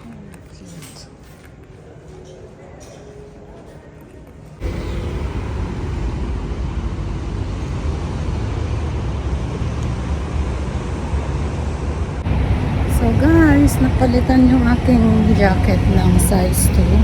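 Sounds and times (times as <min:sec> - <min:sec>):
car road and engine rumble: 0:04.6 - 0:17.0.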